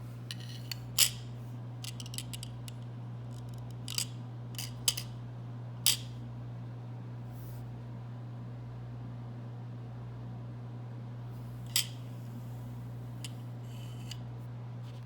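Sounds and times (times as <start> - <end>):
steady low hum: 0.0 - 15.0
small hand tools clicking: 1.8 - 2.5, 3.4 - 5.1.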